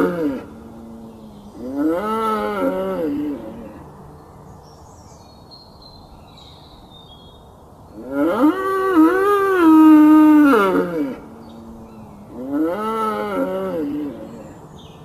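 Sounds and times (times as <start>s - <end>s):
bull bellowing: 0.0s - 3.8s, 8.0s - 14.6s.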